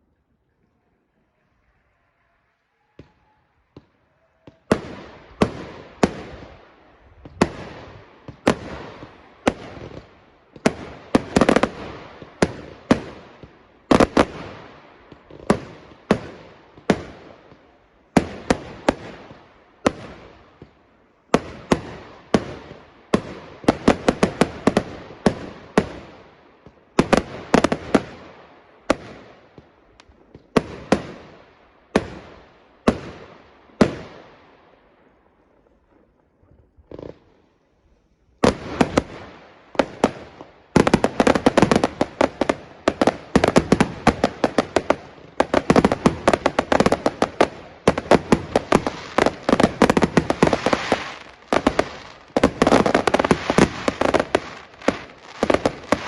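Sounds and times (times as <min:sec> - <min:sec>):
firework bangs echoing: 0:03.0 - 0:34.4, 0:38.4 - 0:56.0.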